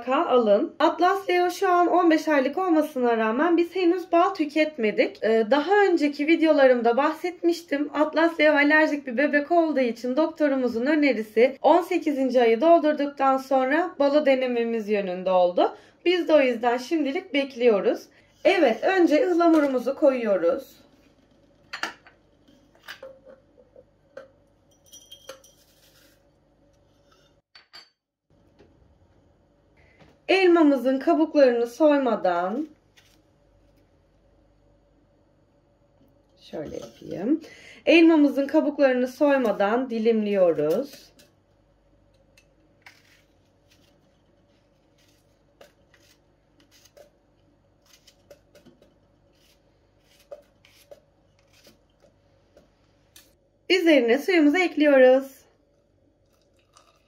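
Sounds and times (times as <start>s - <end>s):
kitchenware clinking and tapping: 21.7s - 22.2s, 22.8s - 25.7s, 27.5s - 28.0s
faint steady hum: 28.3s - 57.0s
knife slicing apple on board: 44.9s - 47.1s, 47.8s - 52.7s.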